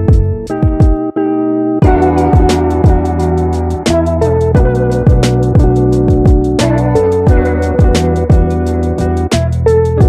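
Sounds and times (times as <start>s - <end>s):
kick drum beat: 0.0s - 1.0s, 1.8s - 3.8s, 4.5s - 6.7s, 7.3s - 8.7s
sustained bass and melody: 0.0s - 10.0s
hi-hats: 1.8s - 10.0s.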